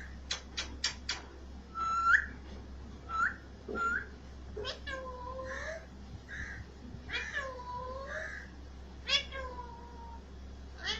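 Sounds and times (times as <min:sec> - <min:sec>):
parrot calling: 0:01.7 - 0:02.3, 0:03.1 - 0:10.2.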